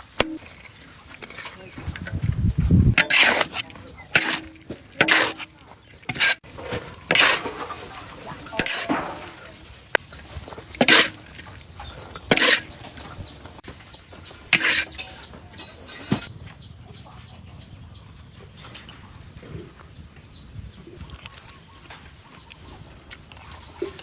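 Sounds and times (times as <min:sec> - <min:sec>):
chicks peeping: 0:05.4 - 0:22.8.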